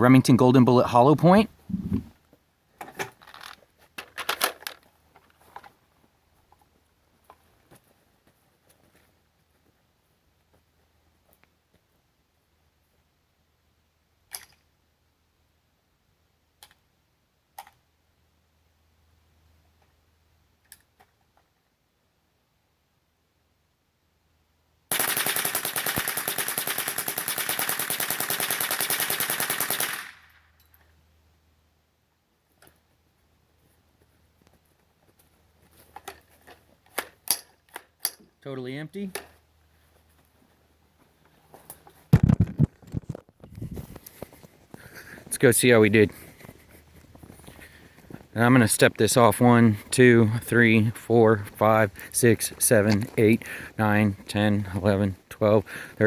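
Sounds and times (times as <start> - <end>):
light metallic clicks and rattles: 2.8 - 5.7, 39.1 - 39.4
rapid rifle shots: 24.9 - 30.4.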